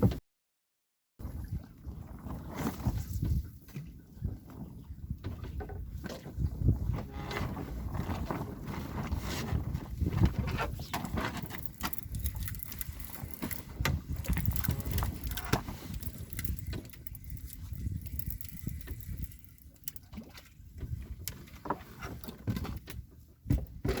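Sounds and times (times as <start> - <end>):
wind buffeting microphone: 2.9 - 21.4.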